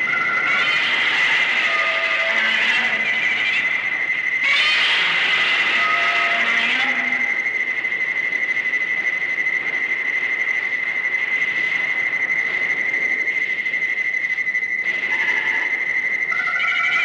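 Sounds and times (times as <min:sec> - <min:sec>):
insect trilling: 0:00.0 - 0:08.1, 0:14.1 - 0:17.0
lower insect call: 0:00.0 - 0:17.0.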